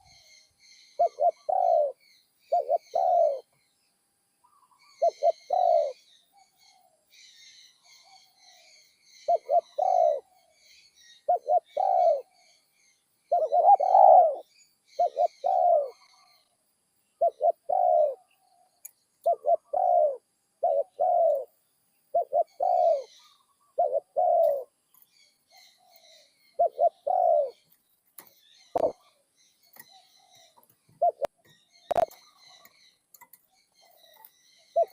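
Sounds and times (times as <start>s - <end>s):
small birds chirping: 0.0s - 34.9s
dove cooing: 1.0s - 3.5s, 4.5s - 6.1s, 8.0s - 10.4s, 11.2s - 12.4s, 13.3s - 16.5s, 17.2s - 18.4s, 19.2s - 21.5s, 22.1s - 24.8s, 25.5s - 27.7s, 28.7s - 29.2s, 29.8s - 32.8s, 33.8s - 34.9s.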